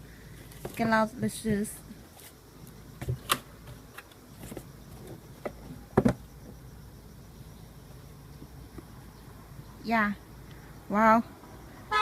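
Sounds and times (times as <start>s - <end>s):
shoebox knocks and rustles: 3.0s - 6.6s.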